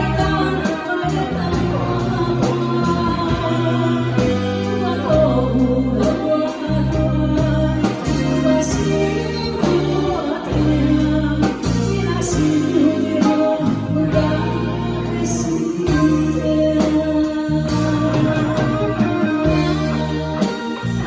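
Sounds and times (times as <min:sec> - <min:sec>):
band backing track: 0:00.0 - 0:21.0
woman singing: 0:00.0 - 0:21.0.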